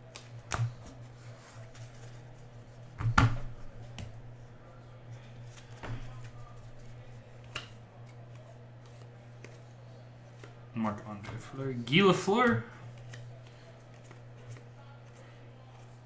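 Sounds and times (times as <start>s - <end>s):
card clicks and slaps: 0.0s - 0.9s, 7.4s - 9.6s, 13.0s - 14.6s
steady low hum: 0.0s - 16.0s.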